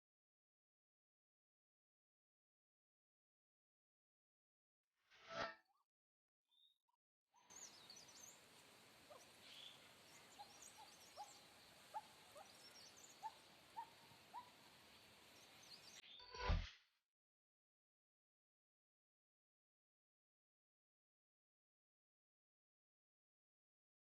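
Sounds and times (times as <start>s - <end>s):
high bird twittering: 9.1s - 16.4s.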